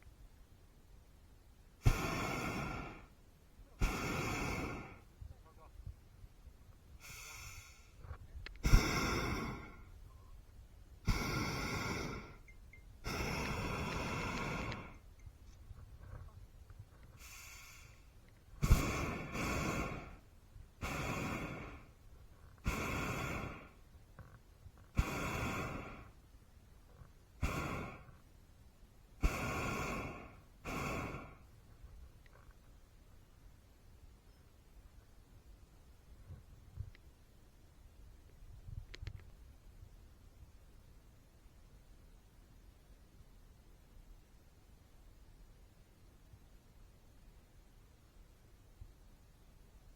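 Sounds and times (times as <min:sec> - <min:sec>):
propane burner roaring blasts: 0:03.8 - 0:05.0, 0:08.6 - 0:09.8, 0:11.1 - 0:12.4, 0:13.0 - 0:15.0, 0:17.2 - 0:18.0, 0:18.6 - 0:20.2, 0:20.8 - 0:21.9, 0:22.6 - 0:23.8, 0:25.0 - 0:26.1, 0:29.2 - 0:31.4.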